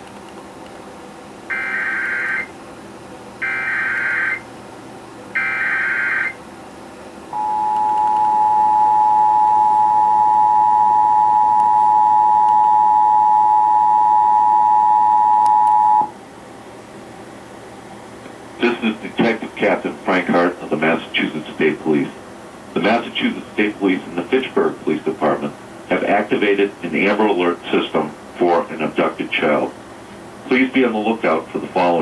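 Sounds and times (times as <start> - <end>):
two-tone attention signal: 7.4 - 16.1.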